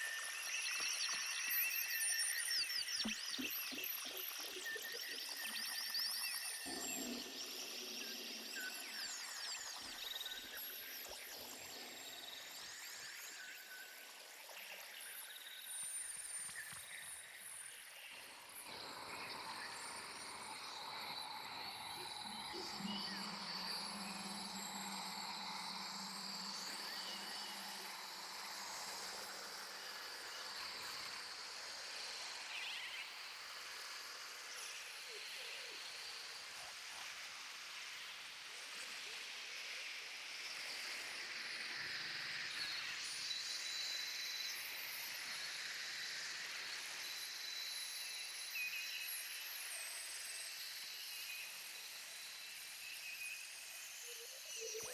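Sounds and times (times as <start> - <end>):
insects chirping and buzzing: 16.5 - 34.7, 40.4 - 54.9.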